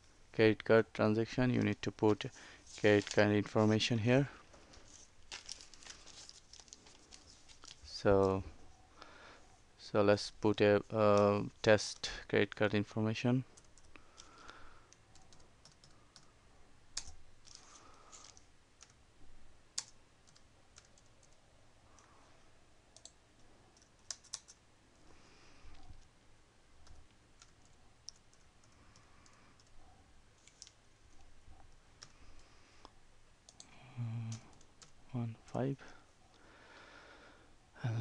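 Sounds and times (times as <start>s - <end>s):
typing on computer keyboard: 15.1s - 16.3s.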